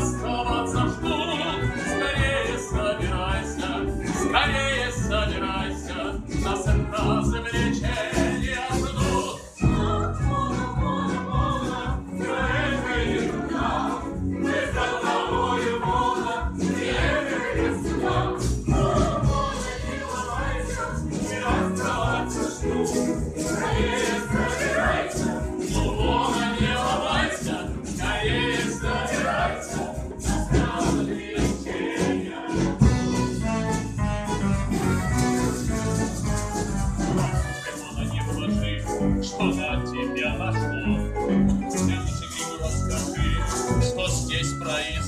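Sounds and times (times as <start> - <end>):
several voices singing: 0.0 - 33.2
instrumental accompaniment with beat: 0.0 - 45.0.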